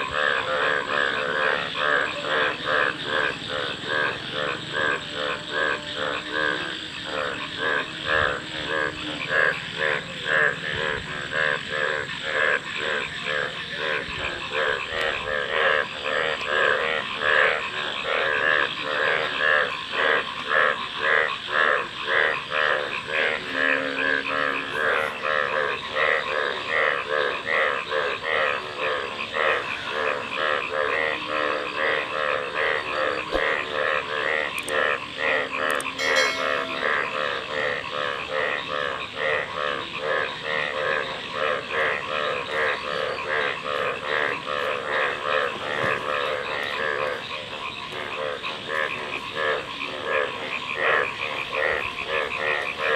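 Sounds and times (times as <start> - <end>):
frogs croaking: 0.0 - 52.9.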